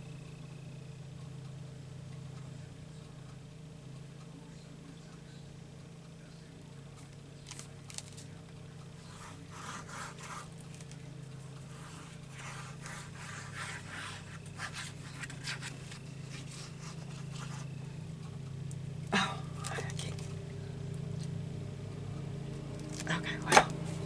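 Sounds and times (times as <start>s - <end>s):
steady low hum: 0.0s - 24.0s
glue bottle tip scraping paper: 9.0s - 17.7s.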